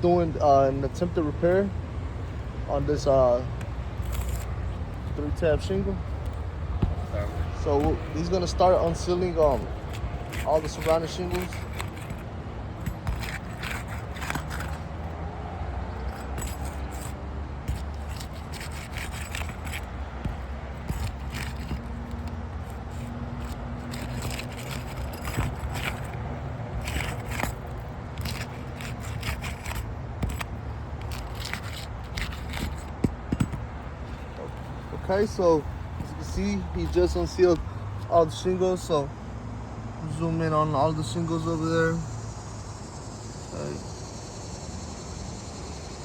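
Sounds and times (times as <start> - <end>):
shingles scraping and crackling: 2.2 - 38.1.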